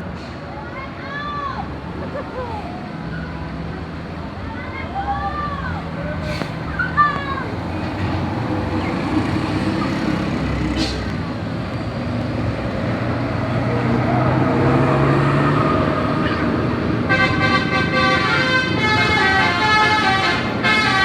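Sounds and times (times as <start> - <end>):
bus engine humming: 0.0 - 21.0.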